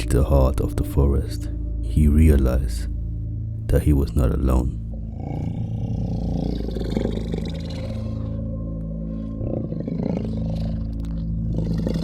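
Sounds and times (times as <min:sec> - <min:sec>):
steady low drone: 0:00.0 - 0:12.0
creature growl: 0:05.1 - 0:08.5, 0:09.2 - 0:12.0.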